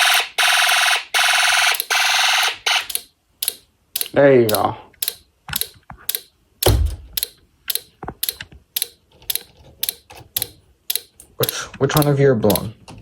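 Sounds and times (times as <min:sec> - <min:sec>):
sharp clicking: 0:02.9 - 0:12.7
heavy dull thud: 0:06.7 - 0:07.2.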